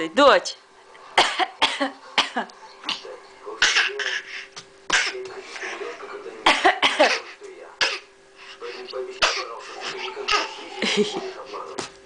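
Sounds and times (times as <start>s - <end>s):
toddler coughing: 1.2s - 3.0s, 3.6s - 4.3s, 4.9s - 5.3s, 6.5s - 8.1s, 9.2s - 10.5s
adult coughing: 1.2s - 4.3s, 4.9s - 8.1s, 9.2s - 11.2s.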